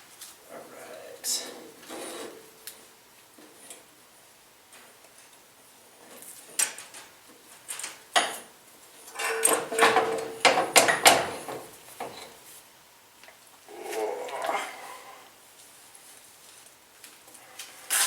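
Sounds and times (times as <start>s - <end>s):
metal parts clunking and scraping: 9.1s - 12.4s.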